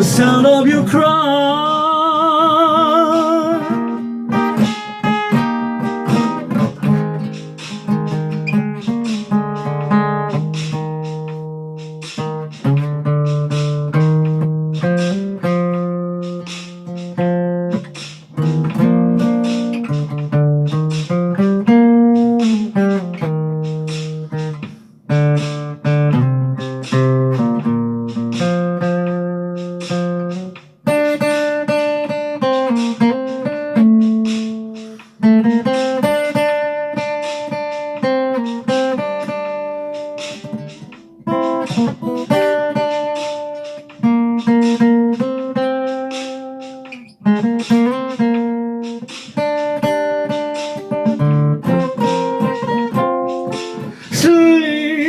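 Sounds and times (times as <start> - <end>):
guitar solo: 0.0 - 55.0.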